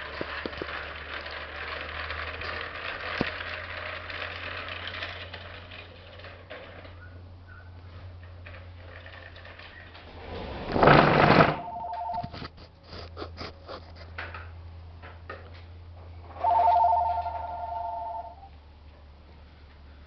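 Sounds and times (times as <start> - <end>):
telephone ringing two-tone trill: 11.6 - 12.4, 16.4 - 18.5.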